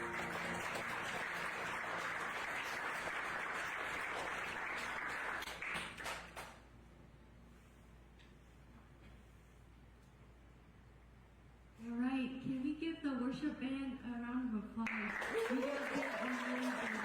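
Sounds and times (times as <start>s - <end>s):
congregation applauding: 0.0s - 6.6s, 14.9s - 17.0s.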